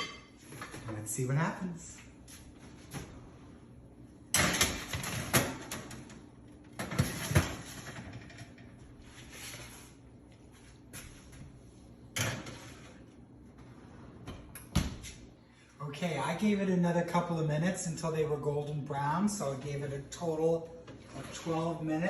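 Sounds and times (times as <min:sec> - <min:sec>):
baking sheets sliding scrapes: 0:12.3 - 0:14.3, 0:21.0 - 0:21.9.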